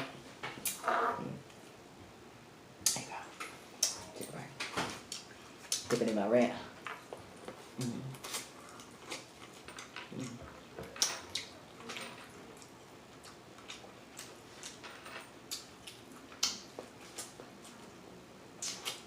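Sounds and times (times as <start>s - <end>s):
person chewing food: 6.8s - 18.0s.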